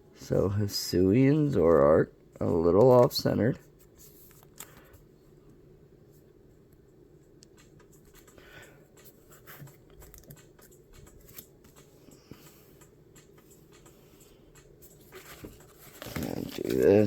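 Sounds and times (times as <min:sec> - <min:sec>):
trading cards being flipped through: 0:09.0 - 0:13.9, 0:14.6 - 0:17.0.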